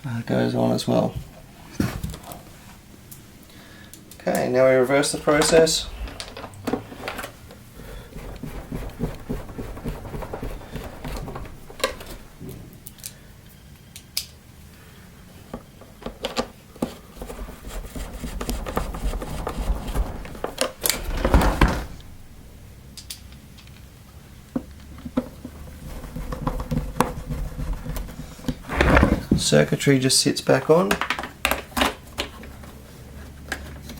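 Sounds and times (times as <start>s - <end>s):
plastic scraping rustle: 5.1s - 13.1s, 16.9s - 22.2s
plastic parts clicking and knocking: 8.1s - 13.2s, 30.9s - 33.9s.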